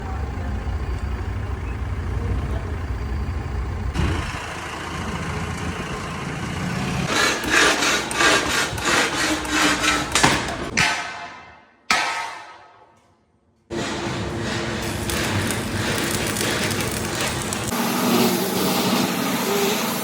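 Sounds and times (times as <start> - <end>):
engine idling: 0.0 - 8.3
sharp knocks: 8.2 - 12.9.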